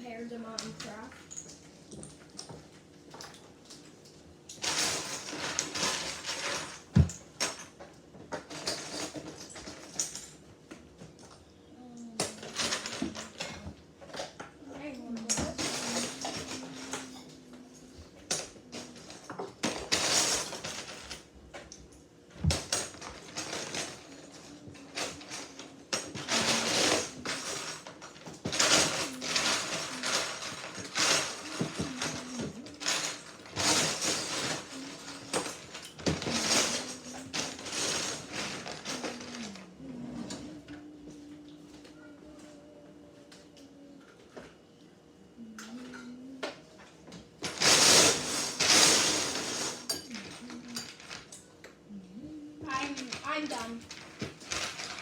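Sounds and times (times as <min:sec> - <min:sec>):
plastic bricks clattering: 0:04.6 - 0:07.6, 0:22.4 - 0:39.8, 0:47.4 - 0:51.4, 0:52.7 - 0:55.0.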